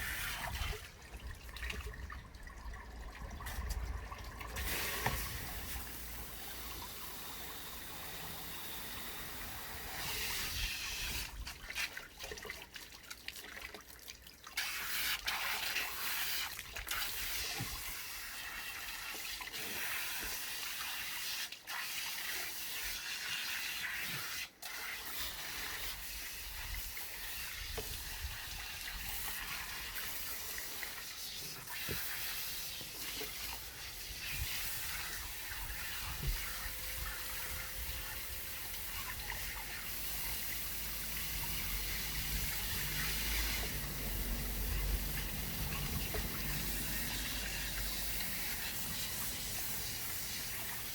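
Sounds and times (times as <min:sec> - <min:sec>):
water running and splashing: 0:00.0 - 0:23.5, 0:24.8 - 0:50.9.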